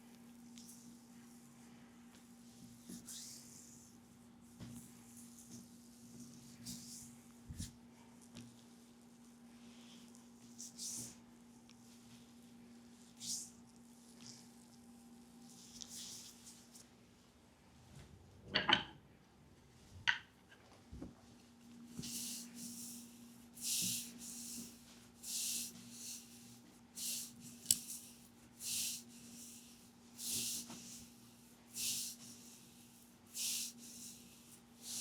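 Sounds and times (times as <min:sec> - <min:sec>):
massage strokes rubbing skin: 0:08.3 - 0:16.9.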